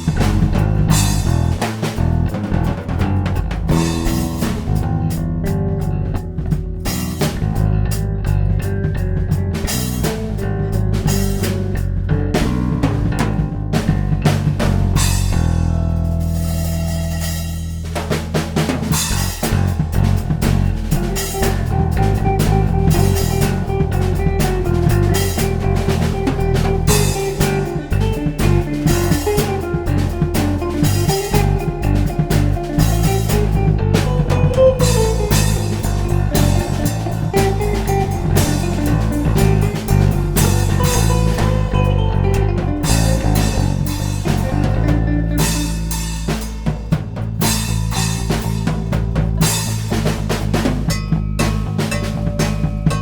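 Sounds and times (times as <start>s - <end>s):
electric guitar melody: 0.0s - 17.4s, 19.7s - 53.0s
bass guitar: 0.0s - 53.0s
drum kit with snare rimshots: 0.0s - 53.0s
held chord ringing: 21.7s - 45.7s.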